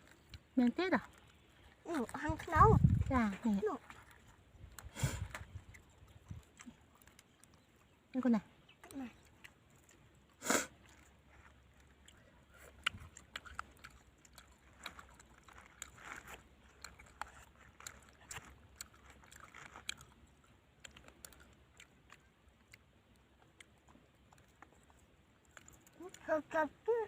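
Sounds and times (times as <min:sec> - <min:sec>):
person chewing crunchy fish: 0:00.0 - 0:26.3.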